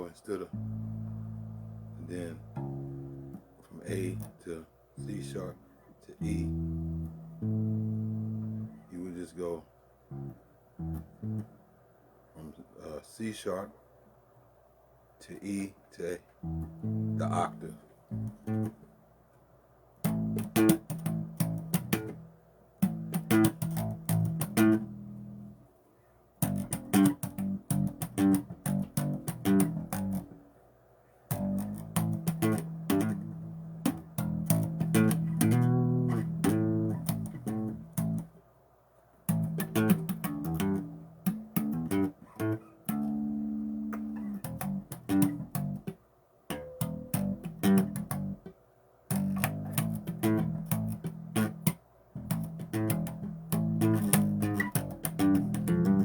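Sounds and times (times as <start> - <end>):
bass guitar plucked bass line: 0.5 - 4.4, 5.0 - 5.6, 6.2 - 8.8, 10.1 - 11.5, 16.4 - 18.8, 20.0 - 25.6, 26.4 - 30.4, 31.3 - 38.4, 39.3 - 48.5, 49.1 - 56.0.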